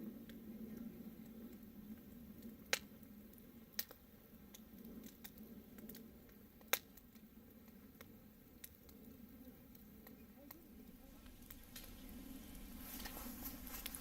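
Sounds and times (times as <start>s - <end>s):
faint fire crackling: 0.0s - 14.0s
sharp fire pops: 2.4s - 9.0s, 11.2s - 14.0s.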